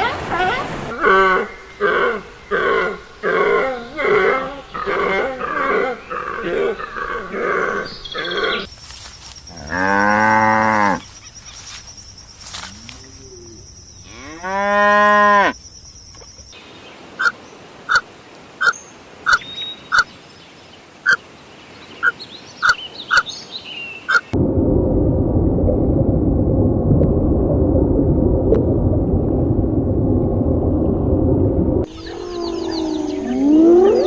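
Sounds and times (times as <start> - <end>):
cow mooing: 9.6 - 11.1, 12.7 - 15.6, 31.9 - 34.0.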